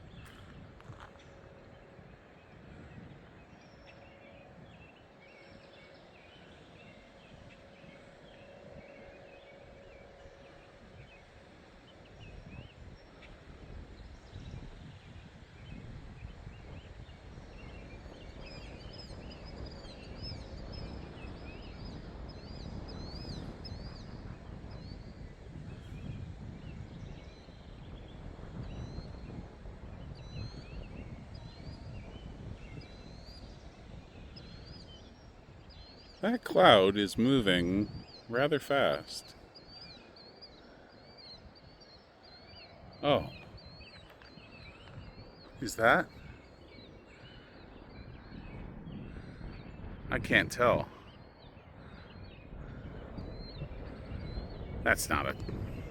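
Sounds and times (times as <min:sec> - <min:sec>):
wind rumble on microphone: 0:00.0 - 0:36.2, 0:37.8 - 0:38.3, 0:39.3 - 0:55.9.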